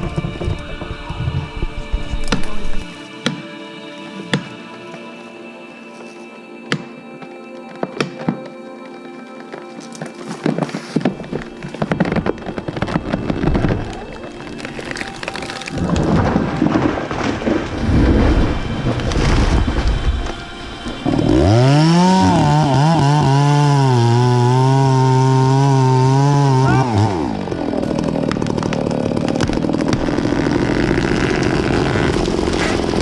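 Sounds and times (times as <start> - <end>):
chainsaw revving: 18.8 - 33.0.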